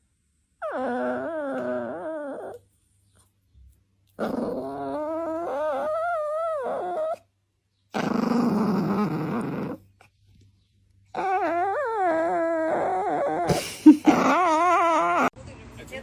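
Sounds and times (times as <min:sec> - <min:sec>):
dog growling: 0:00.6 - 0:02.6, 0:04.1 - 0:07.3, 0:07.9 - 0:10.1, 0:11.1 - 0:15.4
dog howling: 0:00.6 - 0:02.6, 0:04.2 - 0:07.2, 0:11.1 - 0:13.5, 0:14.1 - 0:15.4.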